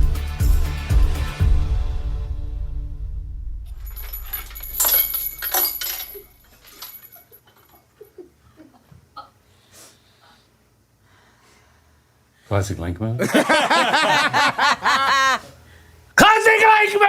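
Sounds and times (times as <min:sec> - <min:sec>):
glassware clinking: 0:03.8 - 0:07.8.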